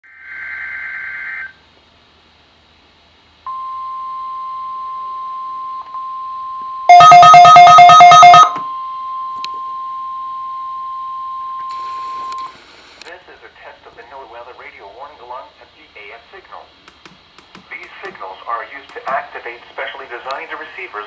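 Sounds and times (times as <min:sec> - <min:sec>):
steady warning alarm tone: 0:03.5 - 0:12.5
rapid electronic beeping: 0:06.9 - 0:08.6.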